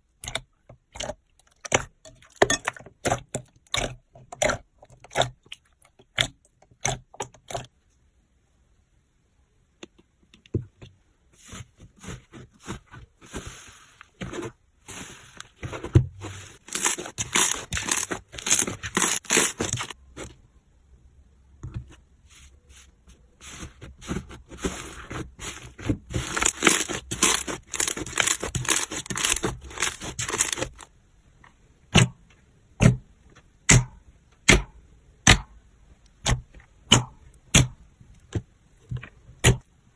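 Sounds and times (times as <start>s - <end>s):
slime crackling and popping: 16.7s - 20.0s, 26.3s - 30.8s.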